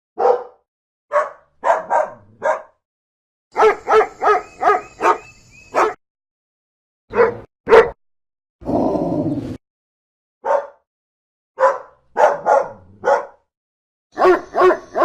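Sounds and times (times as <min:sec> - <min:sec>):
dog barking: 0:00.2 - 0:02.8, 0:03.5 - 0:06.0, 0:07.1 - 0:08.0, 0:10.4 - 0:10.9, 0:11.6 - 0:13.5, 0:14.2 - 0:15.0.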